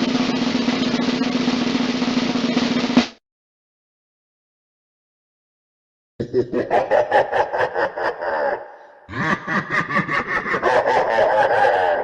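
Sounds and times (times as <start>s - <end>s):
evil cackling laugh: 6.2s - 12.0s.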